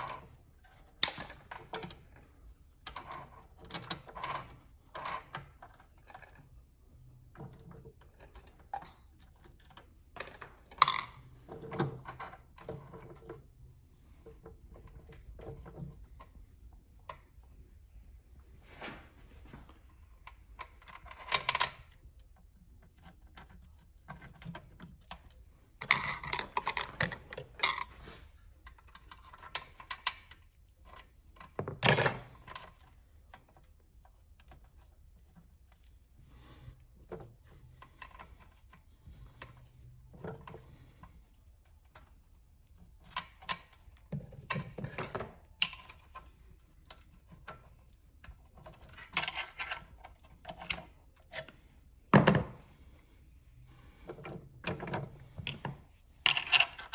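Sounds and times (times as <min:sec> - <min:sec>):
metal parts and tools clinking: 0:31.4 - 0:32.8, 0:43.3 - 0:46.3, 0:48.6 - 0:52.8, 0:54.0 - 0:56.9.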